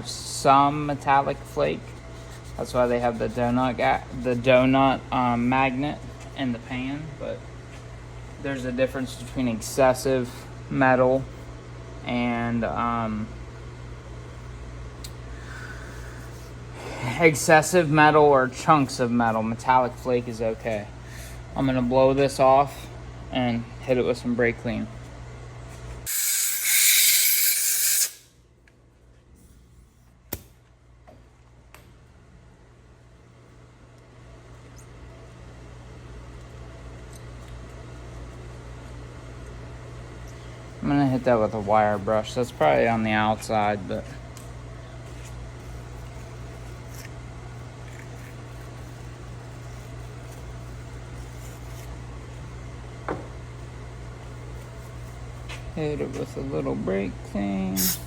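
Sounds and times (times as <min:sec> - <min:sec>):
mechanical hum with low drone: 0:00.0 - 0:58.0
pressurised spray hissing: 0:26.1 - 0:28.3, 0:57.8 - 0:58.0.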